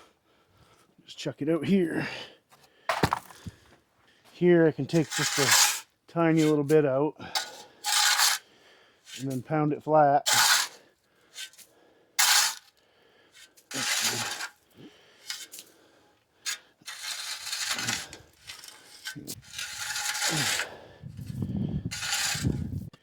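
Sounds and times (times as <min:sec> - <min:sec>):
tool scraping wet gravel: 0:02.9 - 0:03.4, 0:04.9 - 0:08.5, 0:09.1 - 0:09.5, 0:10.3 - 0:10.8, 0:11.4 - 0:12.7, 0:13.4 - 0:14.6, 0:15.2 - 0:15.8, 0:16.4 - 0:22.8.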